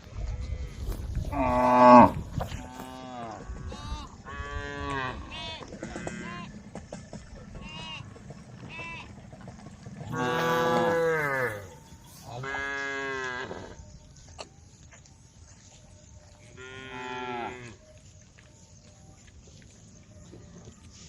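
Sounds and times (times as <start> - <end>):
cows mooing: 1.3 - 5.3, 10.1 - 13.8, 16.6 - 17.8.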